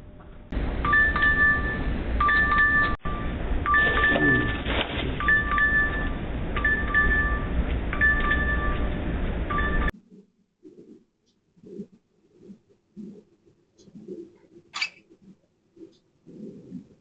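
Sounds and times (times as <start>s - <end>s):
electronic two-note doorbell chime: 0.9s - 4.6s, 5.2s - 8.9s.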